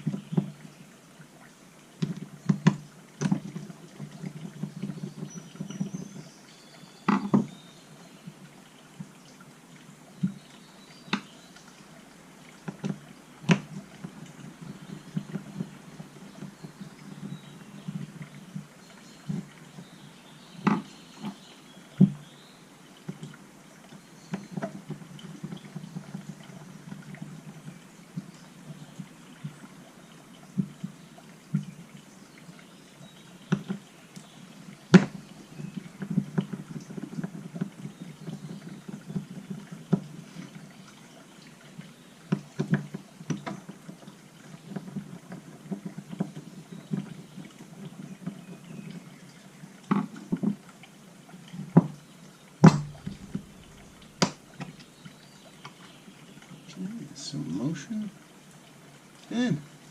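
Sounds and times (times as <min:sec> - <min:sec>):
sharp knock: 0:52.6 - 0:54.4.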